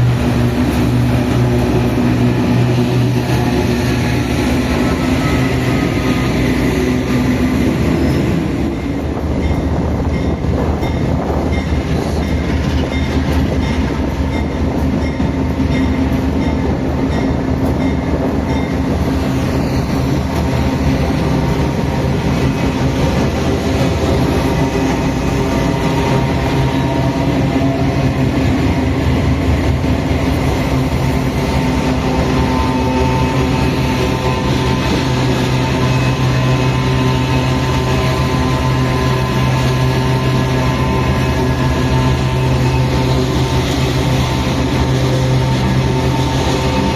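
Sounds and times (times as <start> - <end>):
diesel locomotive engine drone: 0.0 - 46.9.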